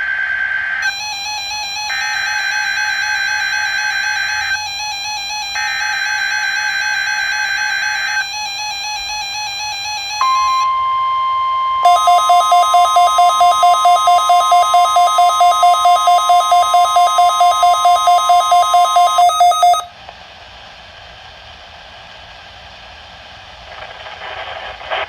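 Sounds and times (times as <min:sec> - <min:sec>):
rapid alarm beeping: 0:00.8 - 0:11.1, 0:11.8 - 0:19.9
steady alarm tone: 0:00.8 - 0:19.9
radio hiss: 0:23.5 - 0:25.0.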